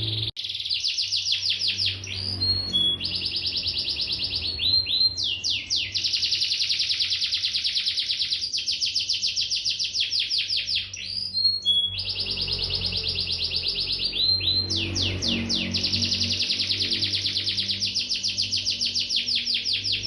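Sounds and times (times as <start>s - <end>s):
canary trilling: 0.0s - 20.0s.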